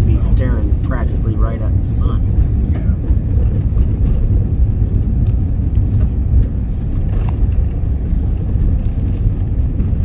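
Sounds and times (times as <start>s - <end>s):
road and engine rumble in cabin: 0.0s - 10.0s.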